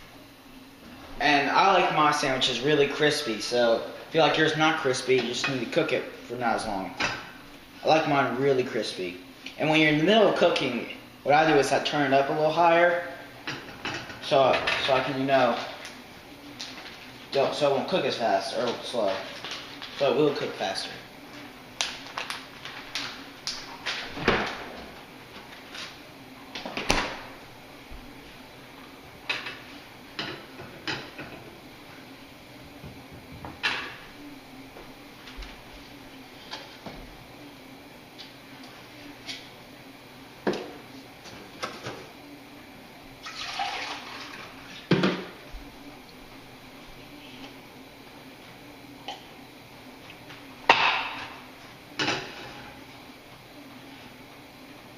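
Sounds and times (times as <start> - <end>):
kitchen tap running: 43.2 - 44.6.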